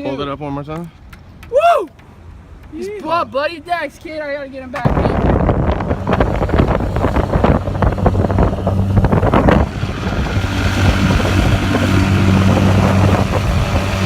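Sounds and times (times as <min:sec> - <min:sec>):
boat engine humming: 0:04.7 - 0:14.0
wind buffeting microphone: 0:04.7 - 0:14.0.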